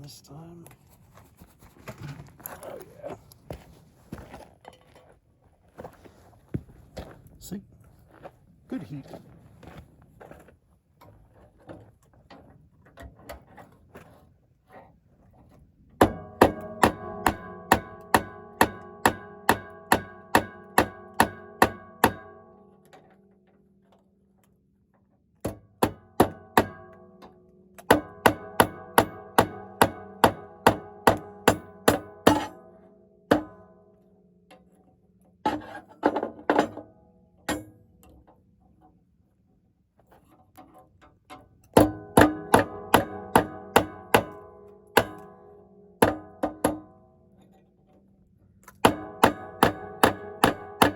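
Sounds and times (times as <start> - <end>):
hammer ringing on metal: 16.0 - 22.6, 27.9 - 32.7, 41.8 - 46.9, 48.8 - 50.9.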